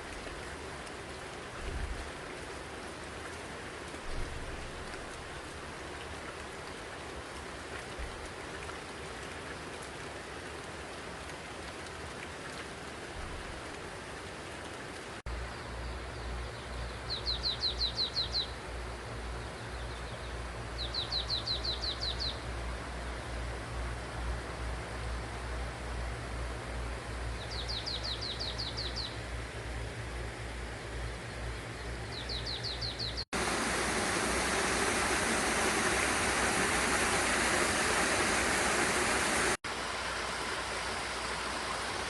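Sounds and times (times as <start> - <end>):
rain pattering: 0.0 - 15.3, 33.3 - 42.0.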